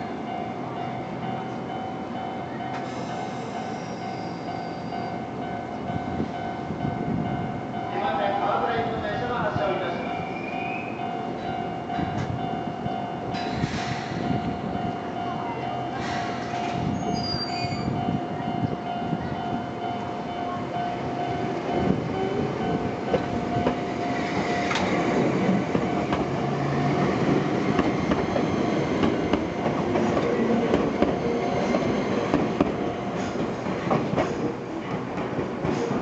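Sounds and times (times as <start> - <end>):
train wheels clattering and squealing: 2.7 - 5.3, 13.3 - 14.5, 15.8 - 18.7, 23.1 - 36.0
crossing warning alarm ringing: 14.3 - 31.7.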